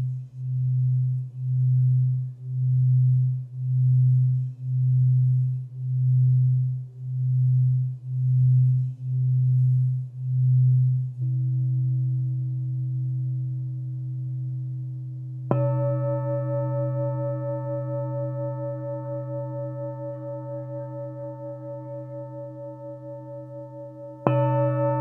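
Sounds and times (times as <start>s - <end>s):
singing bowl tone sung on rim: 0.0s - 25.0s
singing bowl struck ringing: 15.5s - 25.0s.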